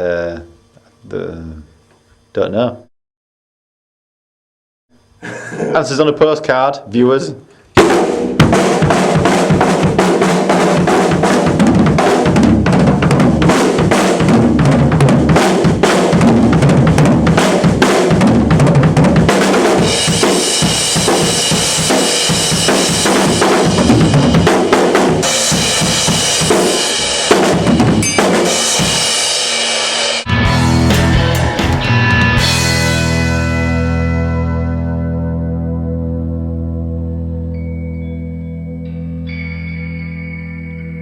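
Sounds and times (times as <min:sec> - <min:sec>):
kick and snare drums: 0:07.8 - 0:29.1, 0:30.3 - 0:32.8
cymbals crashing: 0:19.6 - 0:34.2.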